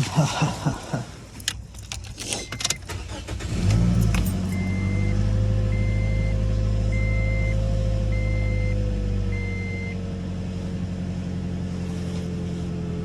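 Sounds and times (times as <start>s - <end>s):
car engine starting and idling: 0.0s - 13.0s
clicks and rattles: 1.3s - 3.0s, 3.7s - 4.7s
high warning chime beeping: 1.8s - 3.0s, 4.0s - 8.8s.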